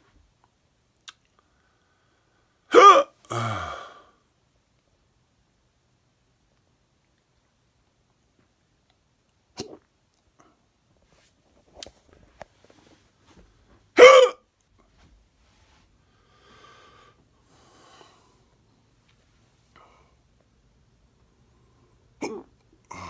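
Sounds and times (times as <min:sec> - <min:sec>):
man hiccuping: 0:02.7 - 0:03.9, 0:14.0 - 0:14.4, 0:22.2 - 0:23.0.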